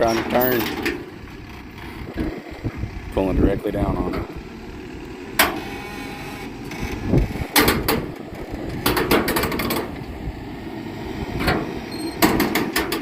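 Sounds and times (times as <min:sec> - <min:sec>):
metallic clanks and knocks: 0:00.0 - 0:01.1, 0:06.9 - 0:10.0, 0:11.4 - 0:13.0
backhoe engine rumble: 0:00.0 - 0:13.0.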